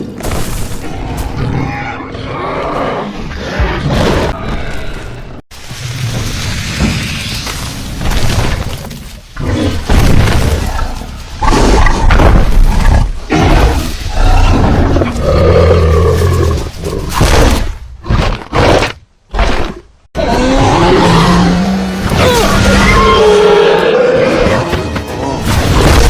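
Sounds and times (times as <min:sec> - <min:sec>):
creature roars and growls: 0:00.8 - 0:05.4, 0:09.4 - 0:17.5, 0:19.5 - 0:25.9.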